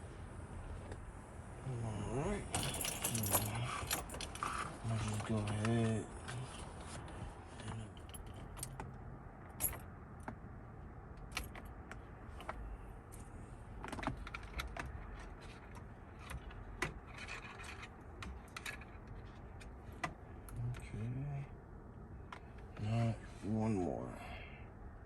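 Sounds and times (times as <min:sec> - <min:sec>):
loose parts rattling: 0:02.6 - 0:05.7
hand tools clicking and clinking: 0:02.6 - 0:05.8.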